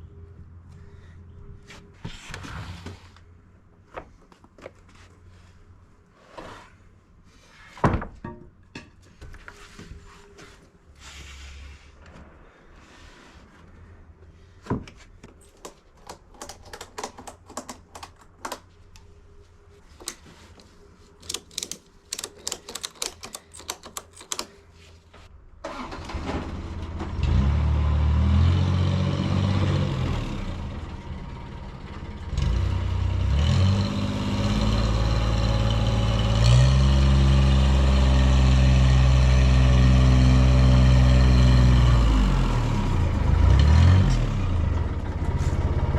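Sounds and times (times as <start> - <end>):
wood knocking and clattering: 7.8 - 9.4.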